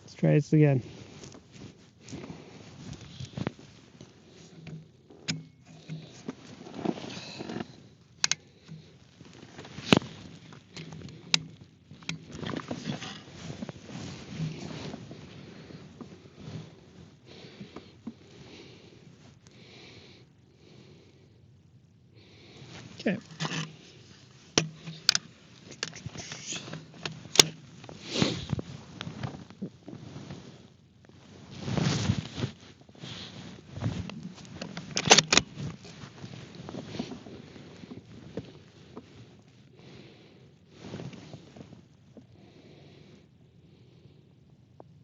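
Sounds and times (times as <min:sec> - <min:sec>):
rustling: 0:00.0 - 0:20.1, 0:22.3 - 0:42.5.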